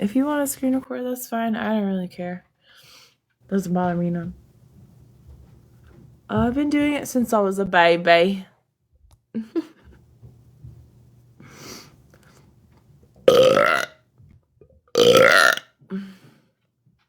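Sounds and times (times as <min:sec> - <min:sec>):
woman burping loudly: 0:13.3 - 0:14.0, 0:14.9 - 0:15.6.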